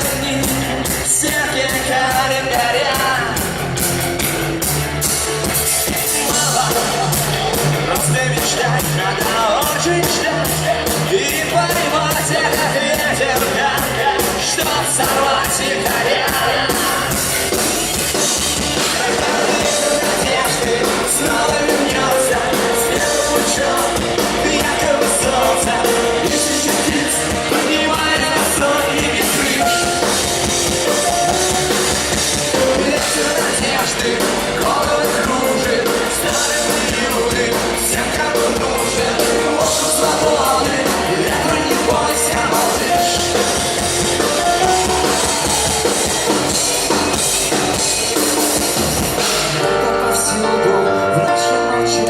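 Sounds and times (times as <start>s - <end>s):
live rock band playing: 0.0s - 52.0s
drum kit hits: 15.9s - 49.8s.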